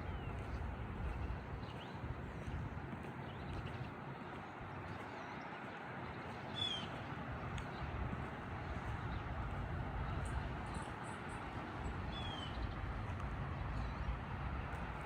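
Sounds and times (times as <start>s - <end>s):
bird chirps: 6.5s - 7.0s.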